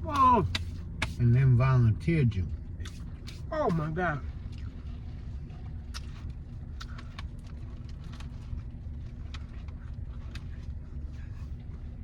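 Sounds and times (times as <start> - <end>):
car cabin engine rumble: 0.0 - 12.0
person chewing food: 5.6 - 11.9.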